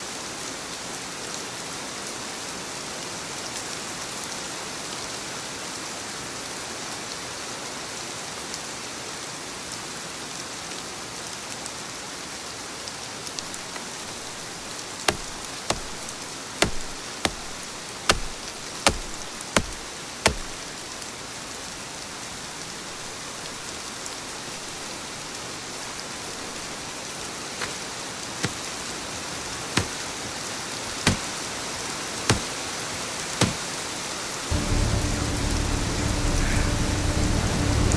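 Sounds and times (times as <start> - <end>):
steady rain: 12.8 - 37.9
sharp knocks: 13.4 - 20.8.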